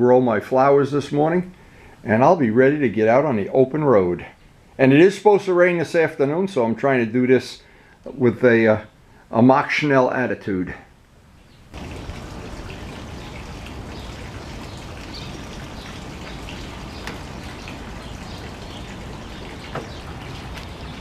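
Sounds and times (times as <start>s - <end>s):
water running in a stream: 11.7s - 21.0s.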